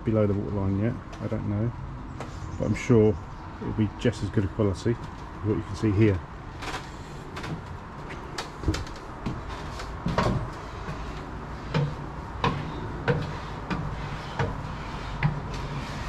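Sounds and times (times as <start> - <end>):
footsteps on wooden boards: 6.6 - 16.0.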